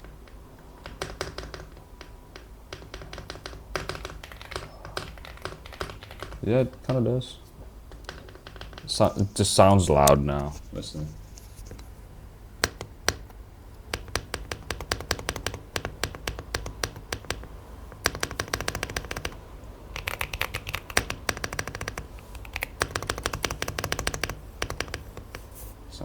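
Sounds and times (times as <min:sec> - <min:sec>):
mechanical keyboard typing: 0:00.8 - 0:07.0, 0:12.6 - 0:25.6.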